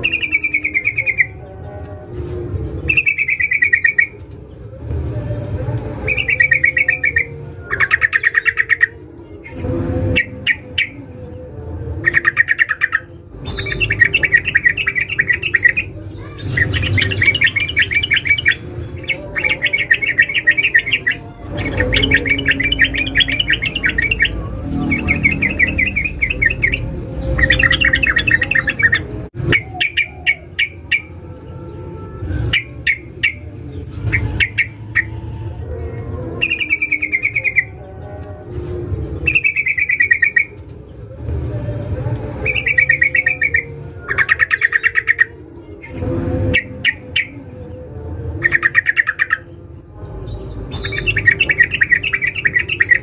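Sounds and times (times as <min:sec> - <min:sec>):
bird chattering trills: 0:12.1 - 0:31.1.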